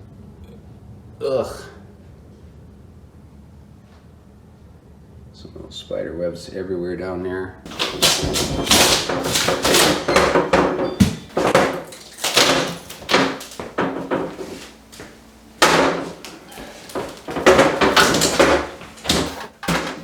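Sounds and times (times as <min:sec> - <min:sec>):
wooden cabinets being pried and broken: 0:07.7 - 0:20.0.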